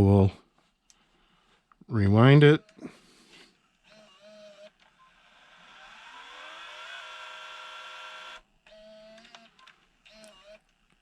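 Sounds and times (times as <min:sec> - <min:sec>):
tape rewinding whine: 0:03.9 - 0:10.7.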